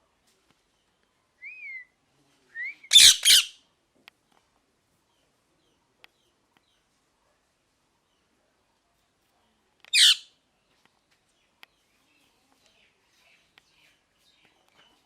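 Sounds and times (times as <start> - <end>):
parrot whistling and squawking: 2.9 - 3.6, 10.0 - 10.2.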